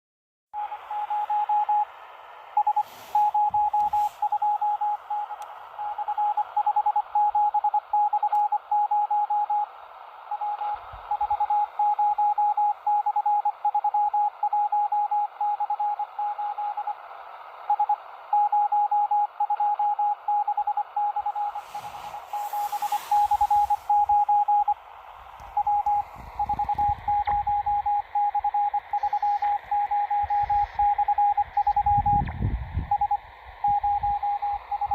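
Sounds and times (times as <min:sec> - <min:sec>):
morse code beeps: 0:00.6 - 0:01.9, 0:02.6 - 0:09.7, 0:10.3 - 0:17.0, 0:17.6 - 0:24.8, 0:25.5 - 0:34.9
radio receiver hiss: 0:00.6 - 0:06.6, 0:21.3 - 0:28.2, 0:28.8 - 0:31.6
short noise bursts: 0:00.6 - 0:06.6, 0:21.2 - 0:28.2.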